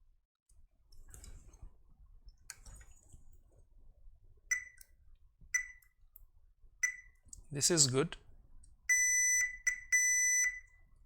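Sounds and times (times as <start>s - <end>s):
short high meter beep: 8.9s - 10.8s.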